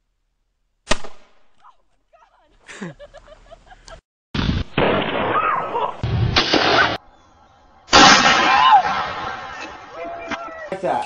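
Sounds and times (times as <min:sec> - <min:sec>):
shotgun blasts: 0:00.8 - 0:01.5, 0:04.4 - 0:07.0, 0:07.9 - 0:09.7.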